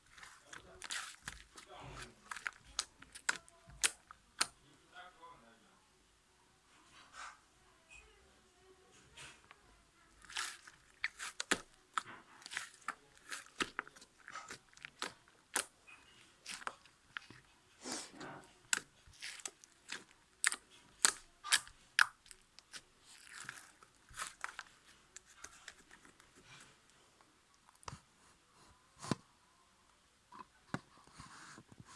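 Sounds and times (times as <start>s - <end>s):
slime squished by hand: 0.1s - 4.6s, 10.1s - 26.2s.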